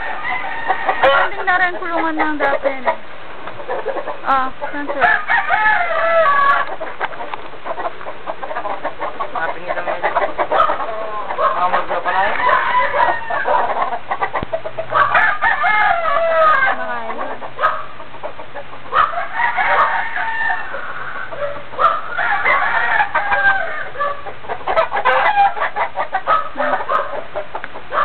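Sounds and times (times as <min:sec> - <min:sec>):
chickens clucking: 0:00.0 - 0:28.0
roosters crowing: 0:00.0 - 0:28.0.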